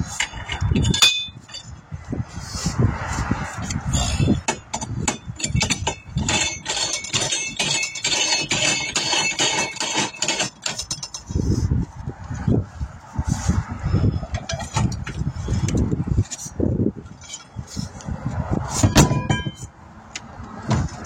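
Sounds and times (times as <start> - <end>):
metal clinking and scraping: 0.0 - 1.8, 3.5 - 11.7, 14.1 - 18.0, 18.7 - 19.7.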